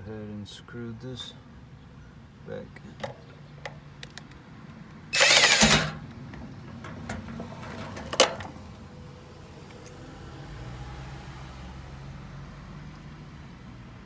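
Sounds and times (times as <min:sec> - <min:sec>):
screw and tool clicks: 0:05.2 - 0:06.0
power driver whirring: 0:05.2 - 0:08.5.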